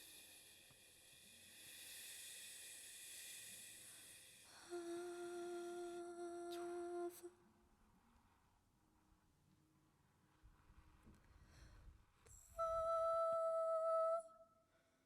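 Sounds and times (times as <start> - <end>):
woman humming a note: 12.6 - 14.5.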